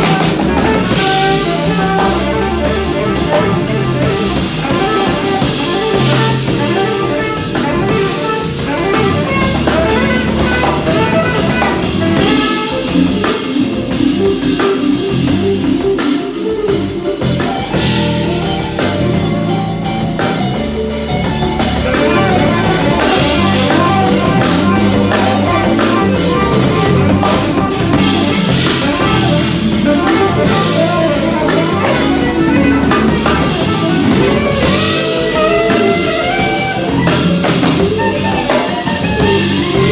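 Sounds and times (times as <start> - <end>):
cymbals washing: 0.0 - 39.9
live band playing: 0.0 - 39.9.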